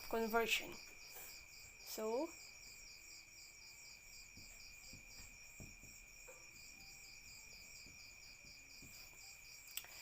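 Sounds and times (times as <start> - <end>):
faint cricket chirping: 0.0 - 10.0.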